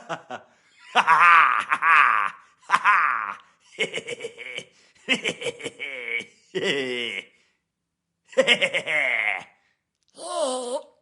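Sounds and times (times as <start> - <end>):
silly laughs: 0.0 - 7.3, 8.3 - 9.5.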